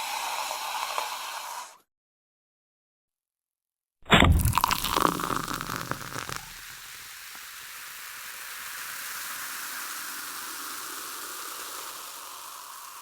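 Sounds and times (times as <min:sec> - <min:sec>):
loud burst: 0:04.1 - 0:06.7
steady hiss: 0:04.9 - 0:13.0.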